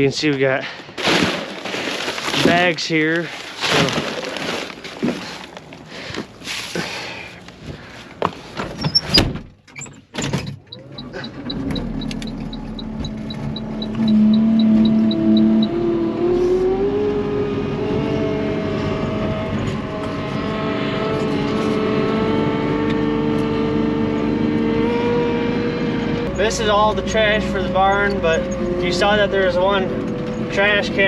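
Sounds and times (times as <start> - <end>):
vehicle engine running: 10.6 - 31.0.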